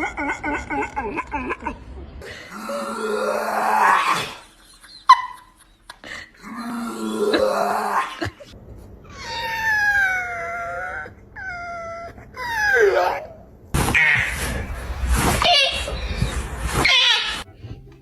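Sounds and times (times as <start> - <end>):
dog grunting and whining: 9.1 - 17.4.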